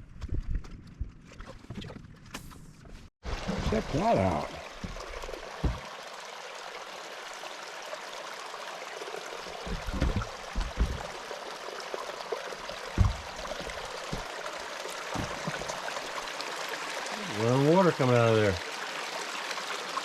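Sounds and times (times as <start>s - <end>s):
water gushing: 3.2s - 20.0s
low thumps: 4.8s - 5.9s, 9.6s - 11.2s, 12.9s - 14.3s, 15.2s - 15.9s.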